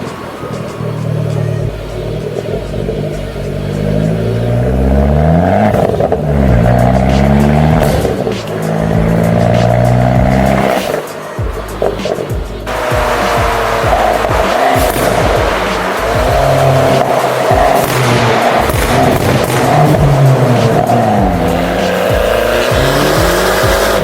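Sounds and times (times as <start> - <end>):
car engine revving: 0.0 - 24.0.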